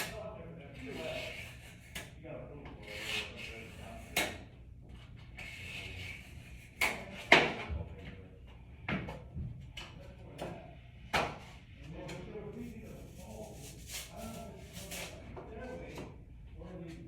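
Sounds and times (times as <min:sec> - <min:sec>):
light rubbing and shuffling: 0:12.6 - 0:15.7.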